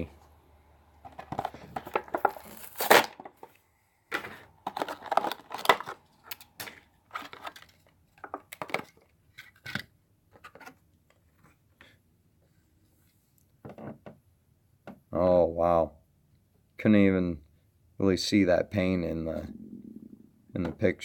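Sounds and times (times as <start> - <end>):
plastic packaging crackling and tearing: 1.3 - 3.4, 4.7 - 8.4.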